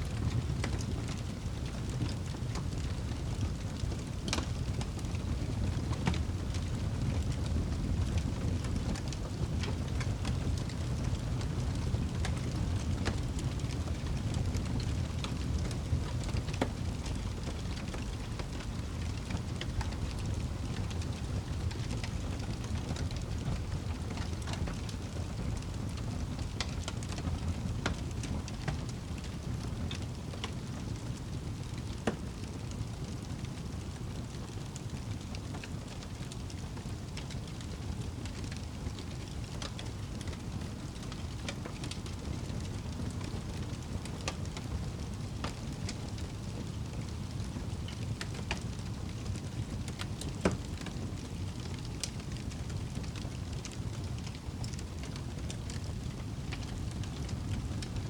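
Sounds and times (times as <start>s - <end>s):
burning wood crackling: 0.0s - 58.0s
low rumble of flames: 0.0s - 58.0s.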